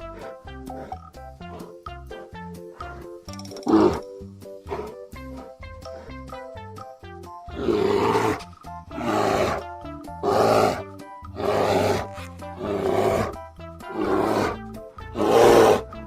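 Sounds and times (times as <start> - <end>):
bear roaring: 0.0 - 1.8, 2.8 - 5.0, 7.5 - 16.0
background music: 0.0 - 16.0.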